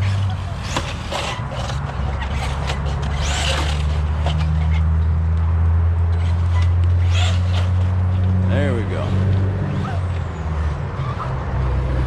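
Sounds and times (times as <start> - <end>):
electric motor whining: 0.0 - 4.9, 6.1 - 11.2
clicks and scrapes from toy car: 0.0 - 5.4, 6.1 - 8.3.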